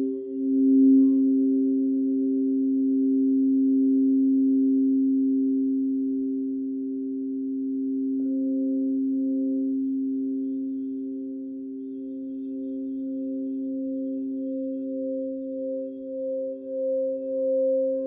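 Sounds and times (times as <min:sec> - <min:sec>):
singing bowls ringing: 0:00.0 - 0:01.8, 0:08.1 - 0:18.0.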